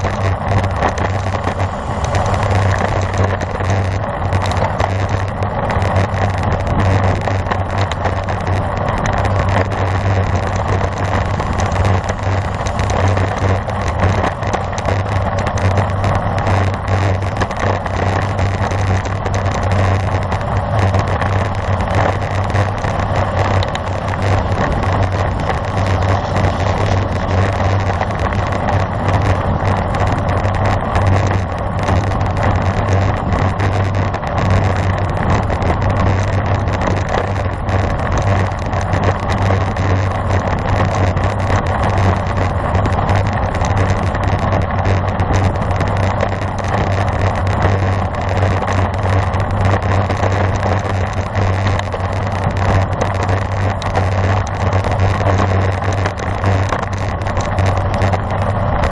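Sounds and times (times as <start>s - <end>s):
road rumble: 0.0s - 58.9s
wind rushing on microphone: 0.0s - 58.9s.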